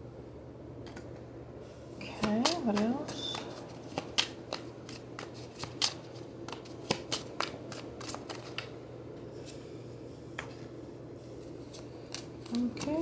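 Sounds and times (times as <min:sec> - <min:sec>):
cards shuffled and tapped: 0:02.1 - 0:08.8, 0:11.4 - 0:13.0.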